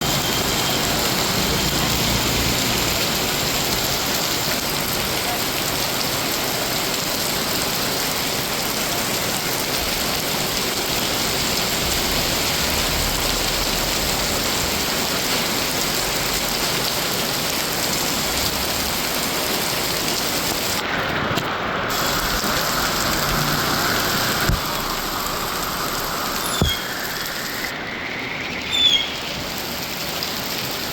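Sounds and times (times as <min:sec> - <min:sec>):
heavy rain pouring: 0:00.0 - 0:30.9.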